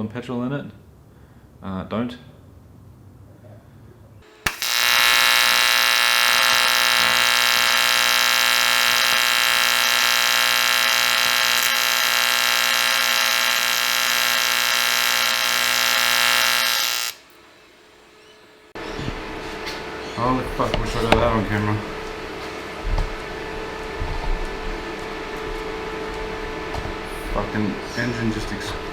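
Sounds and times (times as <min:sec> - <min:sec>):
electronic buzzing tone: 0:04.2 - 0:17.3.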